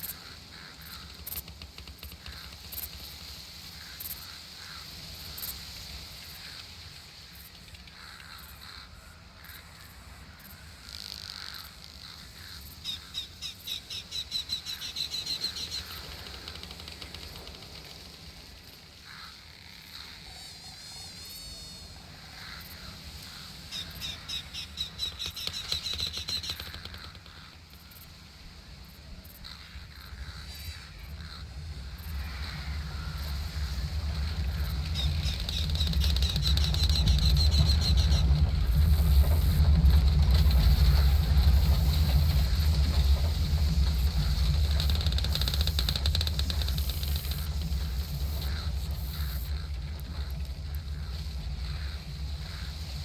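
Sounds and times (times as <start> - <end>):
warbling bird call: 19.0 - 27.9, 29.4 - 53.0
steady low rumble: 27.3 - 53.0.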